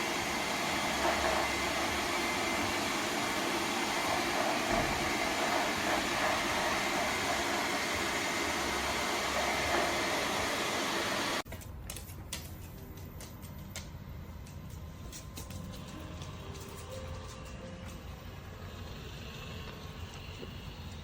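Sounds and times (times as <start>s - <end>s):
vacuum suction motor running: 0.0s - 11.4s, 15.8s - 21.0s.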